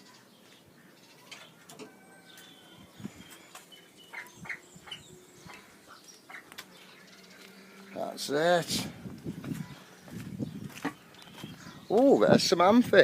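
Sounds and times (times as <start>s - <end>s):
faint bird chirps: 9.6s - 12.0s.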